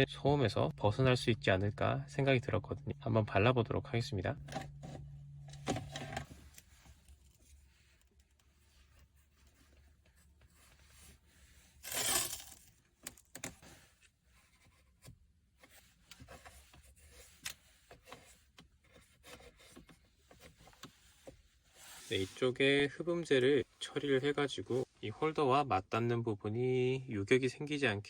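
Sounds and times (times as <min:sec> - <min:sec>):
plastic parts clicking and rubbing: 0:04.4 - 0:10.8, 0:11.8 - 0:21.6.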